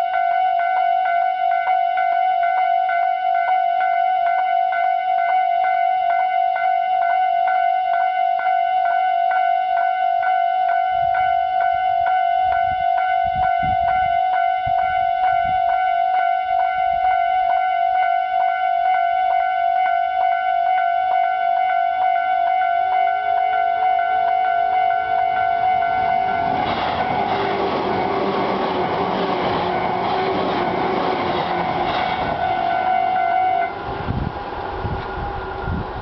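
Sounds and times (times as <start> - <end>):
level-crossing alarm bell ringing: 0.0 - 33.9
low rumble: 25.2 - 36.0.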